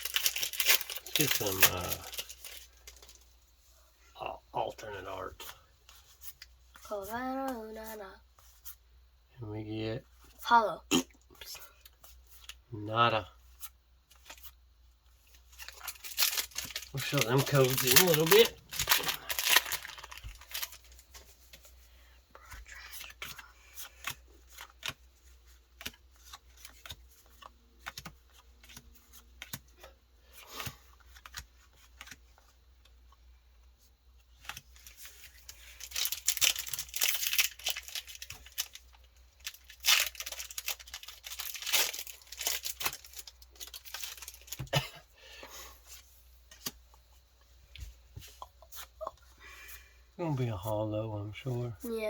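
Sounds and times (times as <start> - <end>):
foil pack tearing and crinkling: 0.0 - 3.1, 15.6 - 21.0, 34.8 - 44.8.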